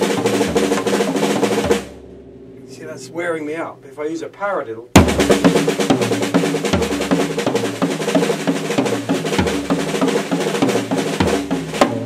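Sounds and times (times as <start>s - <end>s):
low drum hit: 0.0s - 4.0s, 4.9s - 7.2s
fast drum strokes: 0.0s - 12.0s.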